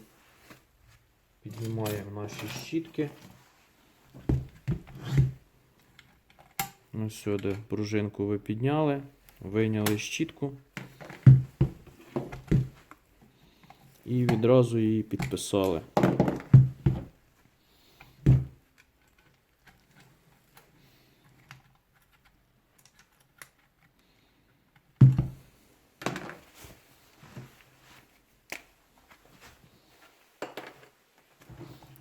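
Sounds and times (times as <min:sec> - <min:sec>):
small parts clicking and knocking: 0:18.0 - 0:25.1.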